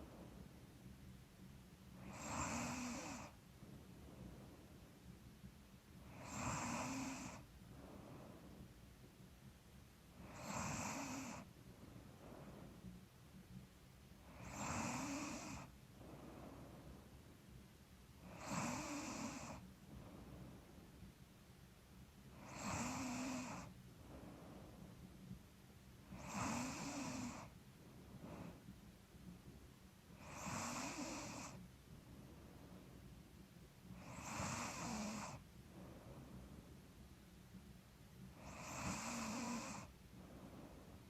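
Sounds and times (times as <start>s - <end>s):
woman snoring: 2.0s - 3.4s, 6.1s - 7.4s, 10.2s - 11.5s, 14.3s - 15.7s, 18.3s - 19.6s, 22.4s - 23.7s, 26.1s - 27.5s, 30.2s - 31.6s, 34.0s - 35.4s, 38.4s - 39.9s.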